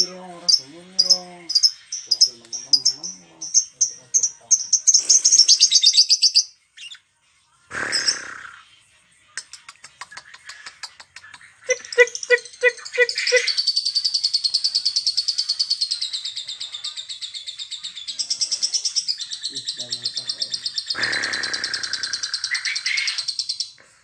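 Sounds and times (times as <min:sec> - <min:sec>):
high-pitched pulsing bird trill: 0:00.0 - 0:07.0, 0:11.6 - 0:23.8
lower harsh bird call: 0:20.9 - 0:23.3.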